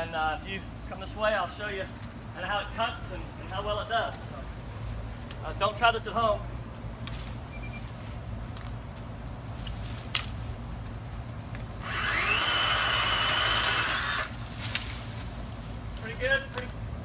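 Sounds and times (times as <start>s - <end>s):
electric chainsaw cutting wood: 11.8s - 14.4s.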